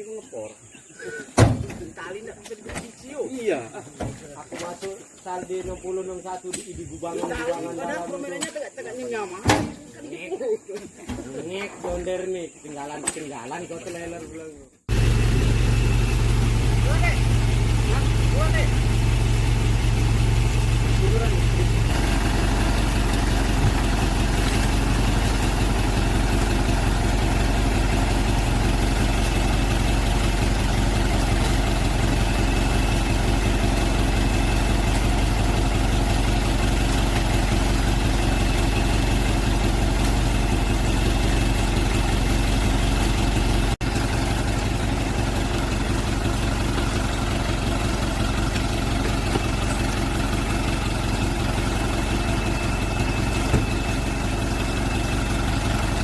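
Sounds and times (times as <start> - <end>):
truck engine running: 14.8 - 56.0.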